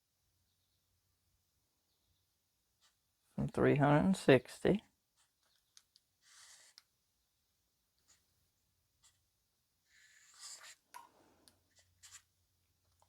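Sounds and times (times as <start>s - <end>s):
pen scratching on paper: 6.2s - 6.9s, 9.9s - 10.9s, 11.7s - 12.3s.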